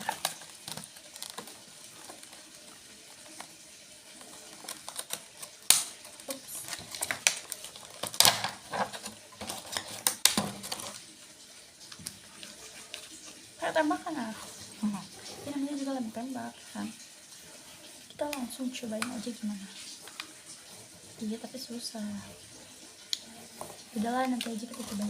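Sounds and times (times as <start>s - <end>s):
plastic packaging clicks and rustling: 0.0s - 11.2s, 11.8s - 13.4s, 23.1s - 25.0s.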